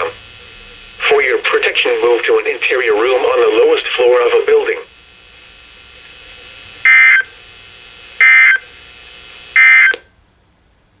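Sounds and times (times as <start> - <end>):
faint steady hiss: 0.0 - 11.0
screeching digital data bursts: 6.8 - 7.3, 8.2 - 8.6
click: 9.9 - 10.1.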